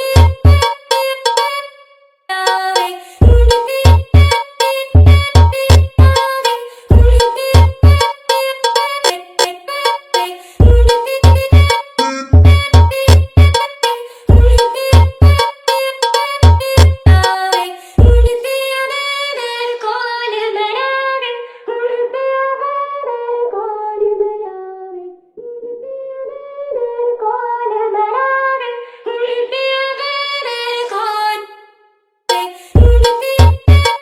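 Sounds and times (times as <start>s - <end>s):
heavy bass beat: 0.0s - 0.8s, 3.2s - 4.4s, 5.0s - 8.2s, 10.6s - 15.6s, 16.4s - 18.4s, 32.8s - 34.0s
melodic singing-like line: 0.0s - 18.3s, 32.3s - 34.0s.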